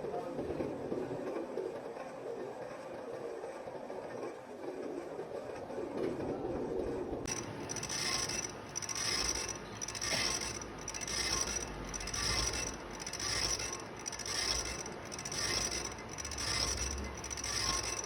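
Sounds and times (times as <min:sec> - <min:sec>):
rasping strokes on rusty metal: 0:07.3 - 0:18.0.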